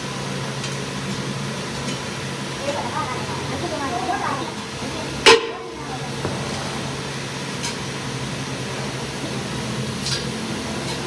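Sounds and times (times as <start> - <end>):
machine hum: 0.0 - 11.0.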